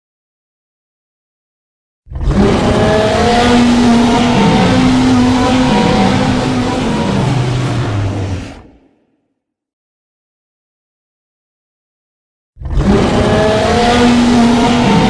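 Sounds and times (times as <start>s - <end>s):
loud rough low roar: 2.1s - 9.0s, 12.6s - 15.0s.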